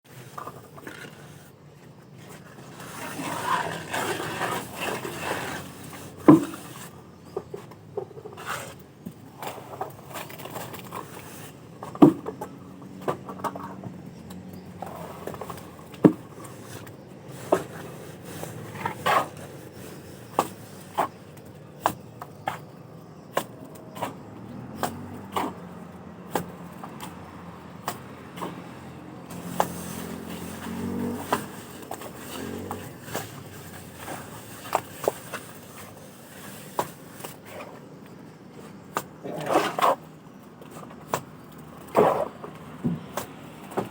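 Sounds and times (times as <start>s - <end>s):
trowel scraping mortar: 2.3s - 8.8s, 29.3s - 37.9s, 39.2s - 40.1s.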